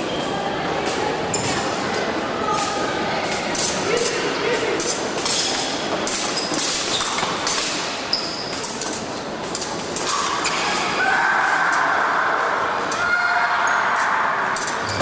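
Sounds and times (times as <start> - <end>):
reverberant hall noise: 0.0 - 15.0.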